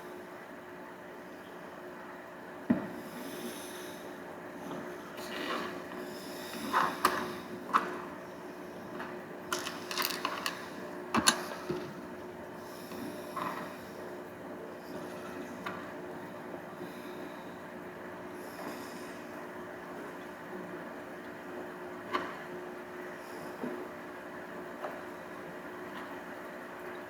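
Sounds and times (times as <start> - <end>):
steady background hum: 0.0 - 27.0
plastic parts clicking: 9.5 - 11.9.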